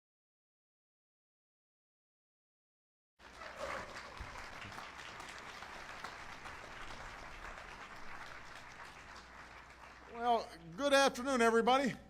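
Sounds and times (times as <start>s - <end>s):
audience applauding: 3.2s - 10.6s.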